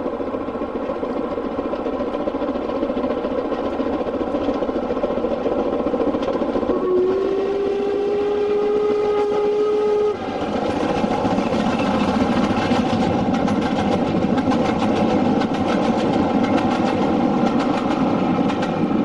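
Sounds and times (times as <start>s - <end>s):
train running at speed: 0.0s - 19.0s
steam locomotive whistle: 6.6s - 10.4s.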